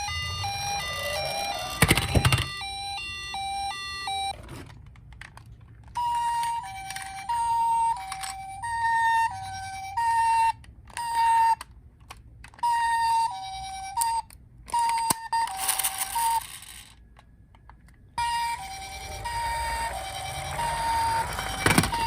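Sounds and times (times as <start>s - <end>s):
toy electronic two-tone siren: 0.0s - 4.4s, 5.8s - 11.8s, 12.5s - 17.0s, 18.2s - 22.0s.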